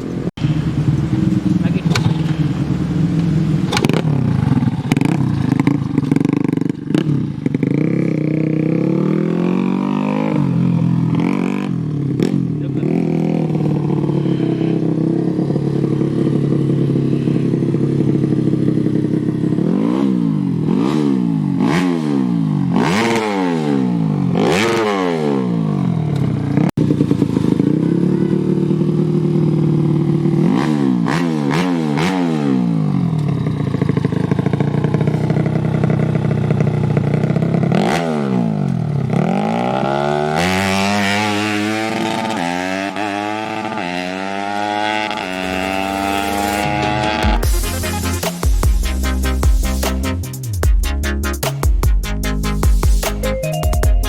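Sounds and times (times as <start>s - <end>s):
motorcycle engine revving: 0.0s - 53.6s.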